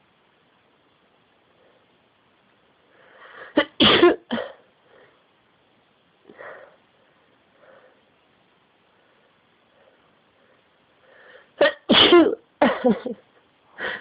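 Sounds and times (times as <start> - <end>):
faint breath: 2.8 - 3.6, 4.8 - 5.3, 6.3 - 8.2, 8.8 - 11.6, 13.7 - 14.0
woman sneezing: 11.6 - 12.4.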